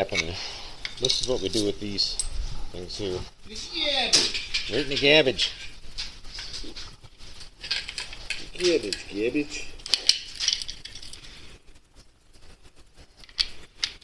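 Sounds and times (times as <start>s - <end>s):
person speaking: 0.0s - 5.6s, 8.4s - 9.9s.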